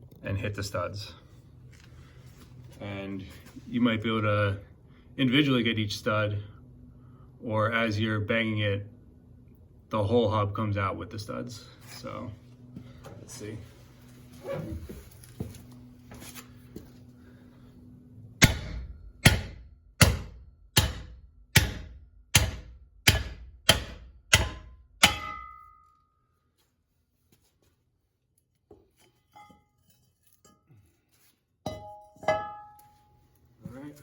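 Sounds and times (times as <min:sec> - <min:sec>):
sledgehammer striking metal: 0:18.4 - 0:26.0
metallic ring: 0:24.5 - 0:26.4, 0:29.1 - 0:30.8, 0:31.7 - 0:33.3.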